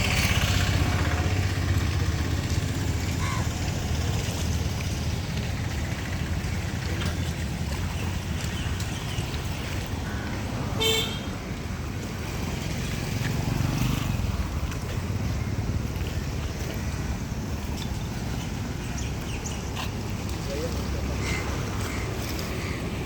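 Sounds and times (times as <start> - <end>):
low outdoor background noise: 0.0 - 23.0
vehicle horn toot: 10.8 - 11.3.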